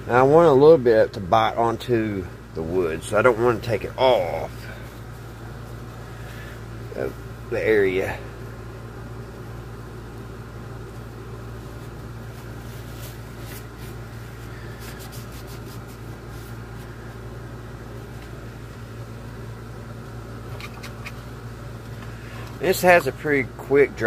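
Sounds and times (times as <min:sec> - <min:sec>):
low electrical hum: 0:00.0 - 0:24.0
light rubbing and scraping on wood: 0:11.5 - 0:17.0.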